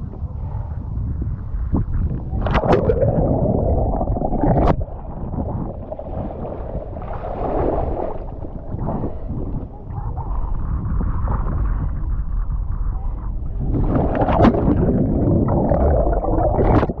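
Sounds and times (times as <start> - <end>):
wind rumble on microphone: 0.0 - 17.0
water splashing around kayak: 2.3 - 9.8, 13.6 - 17.0.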